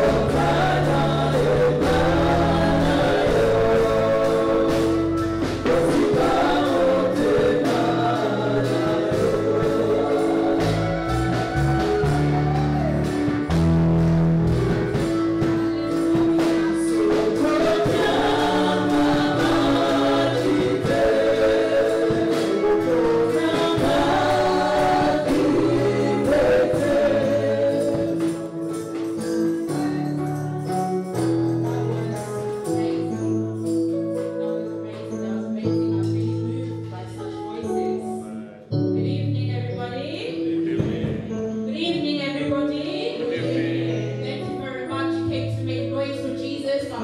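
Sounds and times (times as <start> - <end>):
gospel group singing: 0.0 - 30.3, 40.3 - 45.6
steady beat: 0.0 - 33.0
bass: 0.0 - 47.0.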